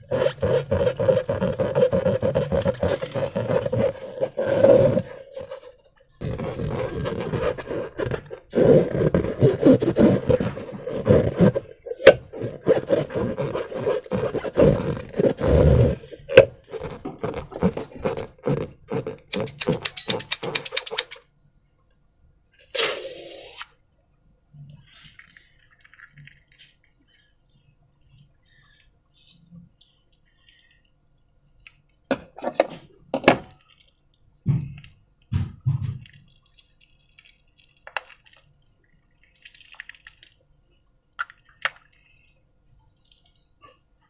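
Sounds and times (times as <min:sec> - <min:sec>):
balloons and slime squeezed by hand: 0:00.0 - 0:21.2, 0:22.6 - 0:23.8
sharp clicks: 0:19.4 - 0:21.2
short hiss: 0:22.6 - 0:23.7.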